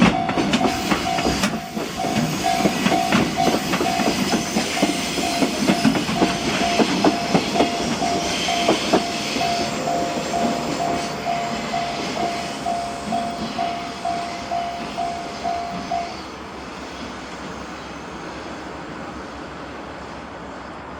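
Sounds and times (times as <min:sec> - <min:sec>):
level crossing alarm ringing: 0:00.0 - 0:16.2
train wheels clacking over rail joints: 0:00.0 - 0:16.2.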